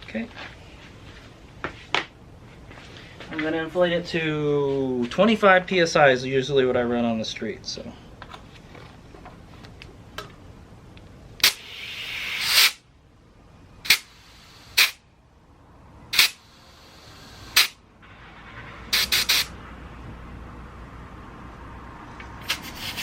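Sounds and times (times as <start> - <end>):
compressed air hissing into tire: 11.4 - 12.8, 13.8 - 15.0, 16.1 - 17.8, 18.9 - 19.6, 22.4 - 23.0.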